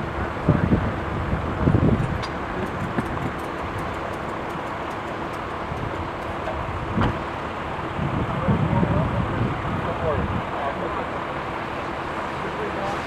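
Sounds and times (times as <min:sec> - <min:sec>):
vehicle rumble and hiss: 0:00.0 - 0:13.0.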